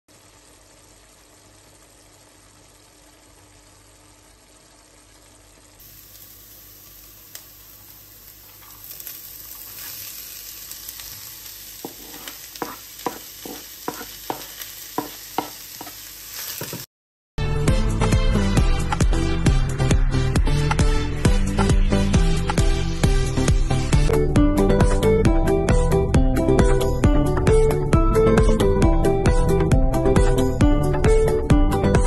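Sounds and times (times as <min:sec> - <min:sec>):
food sizzling in a pan: 0:00.1 - 0:16.9
spoon knocking against pan: 0:11.8 - 0:16.0.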